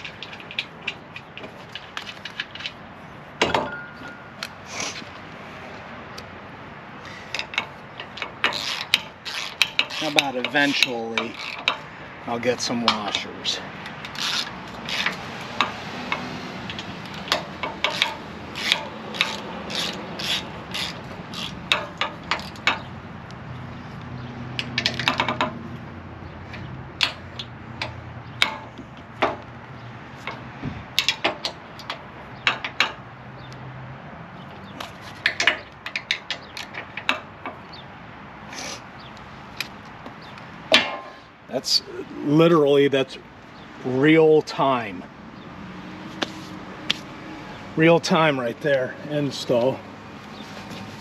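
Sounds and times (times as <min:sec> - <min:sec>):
ratchet wrench clicking: 0:07.3 - 0:11.9, 0:13.8 - 0:22.9.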